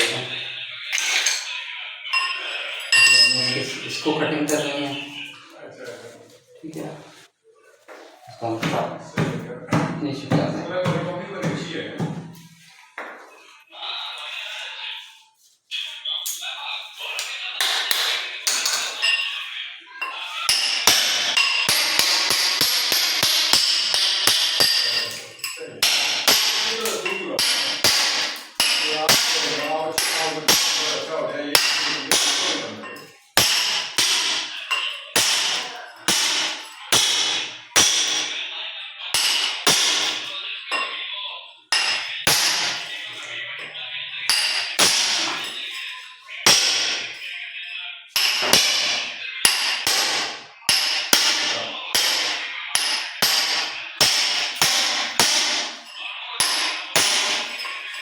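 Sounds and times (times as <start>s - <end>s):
hammer blows ringing metallic: 2.2s - 5.1s, 20.5s - 38.4s, 39.2s - 40.4s, 41.7s - 43.0s, 44.3s - 47.4s, 48.2s - 58.0s.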